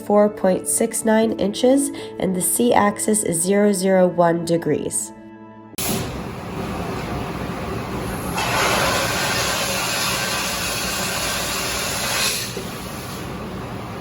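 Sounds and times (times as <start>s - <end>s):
loud hiss: 5.8s - 6.7s, 7.9s - 13.4s
machine hum: 5.8s - 14.0s.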